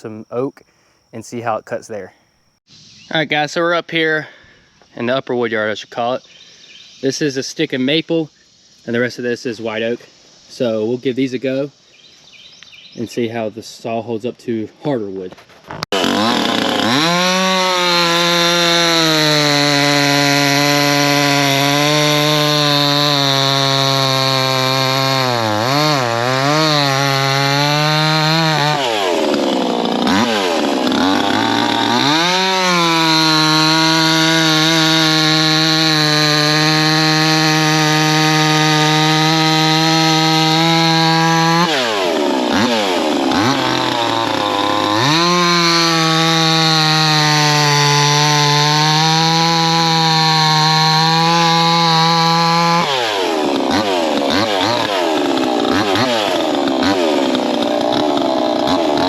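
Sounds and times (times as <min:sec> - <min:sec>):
chainsaw cutting wood: 0:15.8 - 0:59.0.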